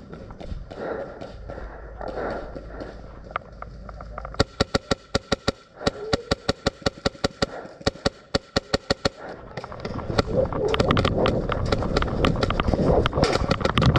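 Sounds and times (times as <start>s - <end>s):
airsoft guns firing rapidly: 4.4s - 13.8s.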